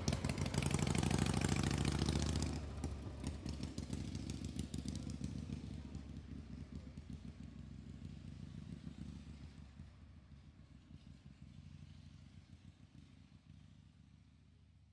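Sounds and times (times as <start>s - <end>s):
motorcycle engine throbbing: 0.0s - 6.3s.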